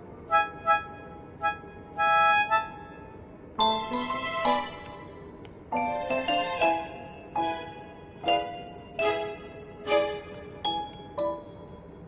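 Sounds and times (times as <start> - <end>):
bell-like melody: 3.6 - 12.0.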